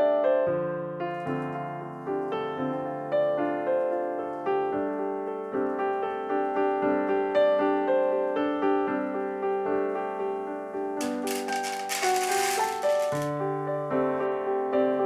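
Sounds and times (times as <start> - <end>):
gentle piano melody: 0.0 - 11.3.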